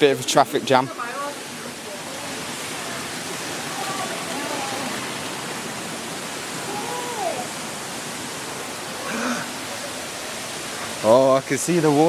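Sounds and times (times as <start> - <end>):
waterfall rushing: 0.0 - 12.0
faint voice: 6.6 - 7.5.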